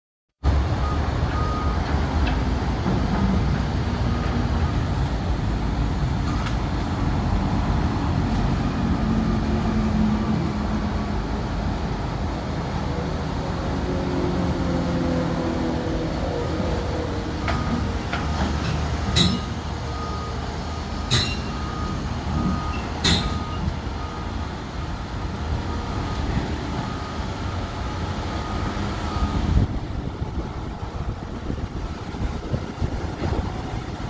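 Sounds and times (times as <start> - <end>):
diesel engine running: 0.4 - 34.0
travel alarm beeping: 0.8 - 1.9, 19.2 - 29.8
sharp metallic clanks: 18.6 - 19.6, 21.1 - 21.6, 22.7 - 23.6.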